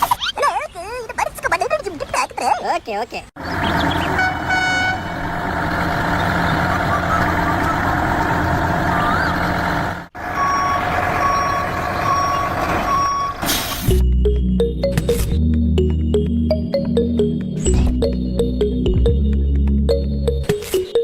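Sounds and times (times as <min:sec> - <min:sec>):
heavy vehicle engine running: 0:03.4 - 0:14.5
reversing alarm beeping: 0:10.2 - 0:14.4
music: 0:13.9 - 0:21.0.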